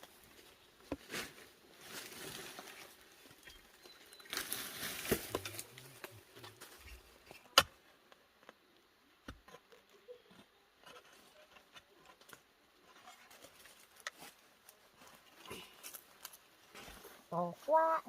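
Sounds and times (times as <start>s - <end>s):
knocks and thuds of digging soil: 4.2s - 7.8s.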